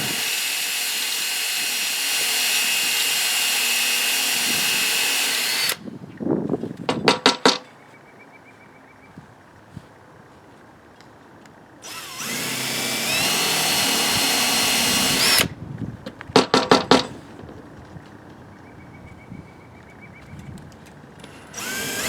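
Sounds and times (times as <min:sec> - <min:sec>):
power drill whining: 0:00.0 - 0:05.8, 0:11.8 - 0:15.5, 0:21.2 - 0:22.0.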